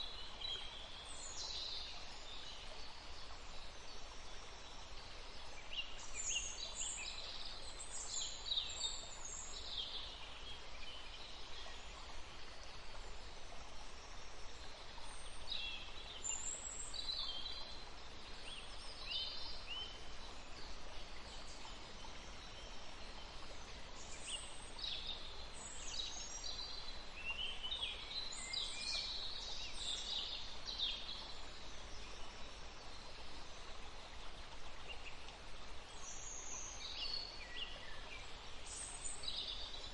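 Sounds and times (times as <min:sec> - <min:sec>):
faint background hiss: 0:00.0 - 0:39.9.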